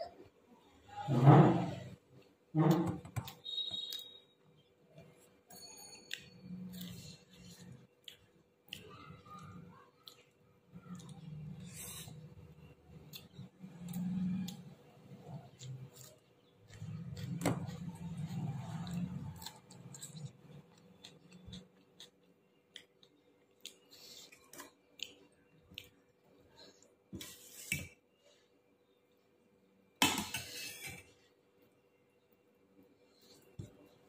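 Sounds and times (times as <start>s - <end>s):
tableware clinking and scraping: 1.0s - 1.9s.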